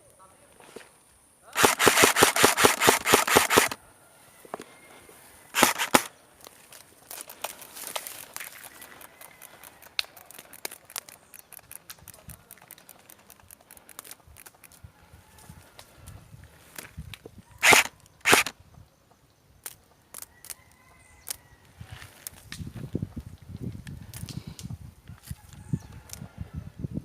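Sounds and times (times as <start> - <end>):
airsoft rifle full-auto bursts: 1.6 - 3.8, 5.6 - 6.1, 17.6 - 18.5
faint crackling and rustling clicks: 5.6 - 14.8.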